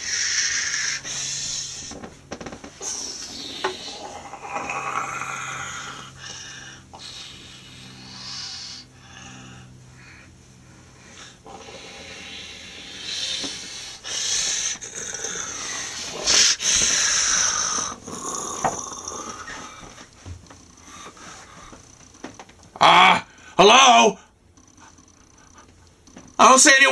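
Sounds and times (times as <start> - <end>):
breathy hissing monster voice: 0.0 - 20.2.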